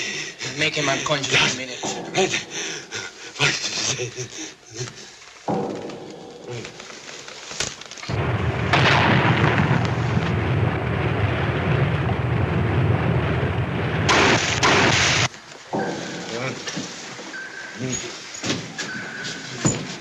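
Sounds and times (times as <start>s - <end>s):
underwater rumble: 8.1s - 14.6s
depth charge blasts: 8.1s - 15.3s.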